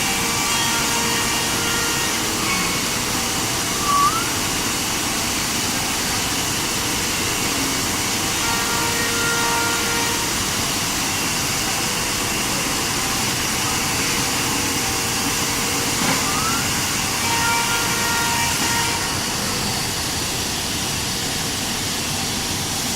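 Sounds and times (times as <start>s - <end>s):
faint high whining tones: 0.4s - 4.7s, 12.4s - 19.9s.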